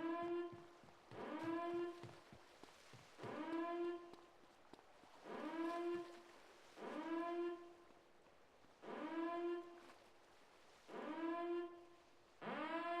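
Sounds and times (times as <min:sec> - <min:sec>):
siren sweeping up in pitch: 0:00.0 - 0:02.1, 0:03.3 - 0:04.1, 0:05.3 - 0:06.2, 0:06.8 - 0:07.8, 0:08.8 - 0:09.8, 0:10.9 - 0:11.8, 0:12.4 - 0:13.0.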